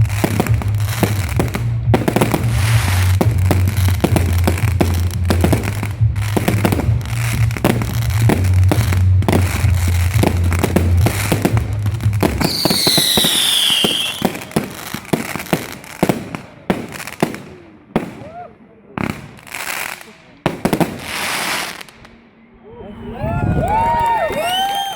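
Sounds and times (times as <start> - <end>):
low drone: 0.0 - 12.6
fireworks bangs and crackles: 0.0 - 22.3
falling firework whistle: 12.4 - 15.5, 22.7 - 24.9.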